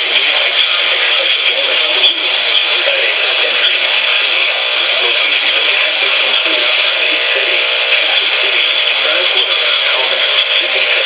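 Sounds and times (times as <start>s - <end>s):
radio static hiss: 0.0s - 11.0s.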